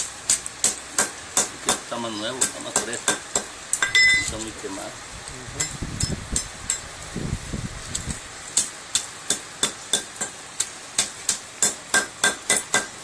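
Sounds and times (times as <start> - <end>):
hammer blows ringing on metal: 11.6 - 12.9.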